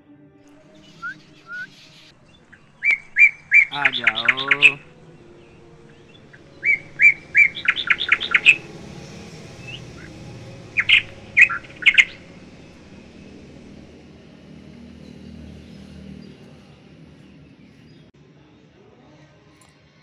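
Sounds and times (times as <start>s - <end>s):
parakeet chirping: 0.8s - 13.0s.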